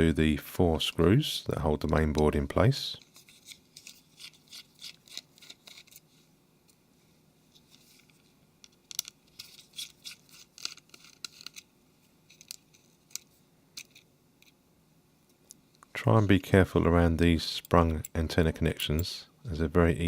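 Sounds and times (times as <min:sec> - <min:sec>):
screwdriver metal clicks and scrapes: 0:03.0 - 0:06.1, 0:08.6 - 0:11.7.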